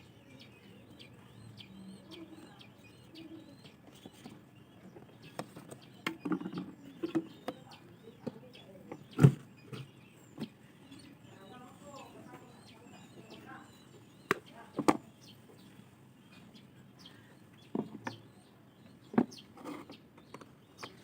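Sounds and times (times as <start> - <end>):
pigeons cooing: 0.0 - 15.3
birds chirping: 0.0 - 21.0.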